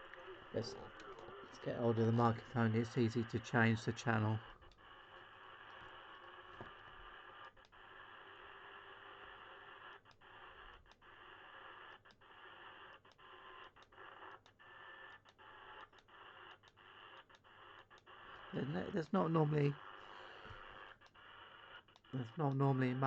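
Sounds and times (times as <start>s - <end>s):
radio static hiss: 0.0s - 7.5s, 18.2s - 20.6s, 22.2s - 23.0s.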